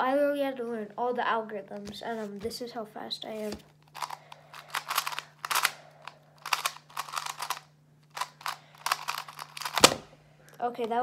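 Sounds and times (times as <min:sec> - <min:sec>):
puzzle cube plastic clicks: 0:03.9 - 0:10.6.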